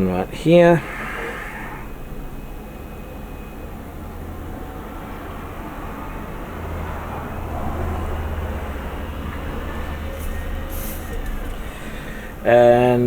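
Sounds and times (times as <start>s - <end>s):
even background rush: 0.0s - 13.0s
steady low hum: 0.0s - 13.0s
brief high hisses: 0.8s - 2.0s, 10.2s - 12.3s.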